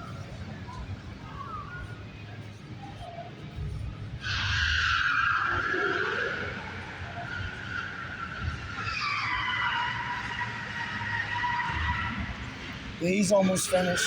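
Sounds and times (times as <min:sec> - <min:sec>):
car tyres squealing: 0:04.1 - 0:14.0.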